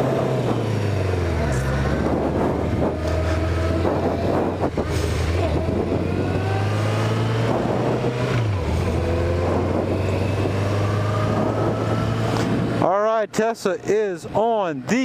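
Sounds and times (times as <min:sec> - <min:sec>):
motorcycle engine accelerating: 0:00.0 - 0:13.0.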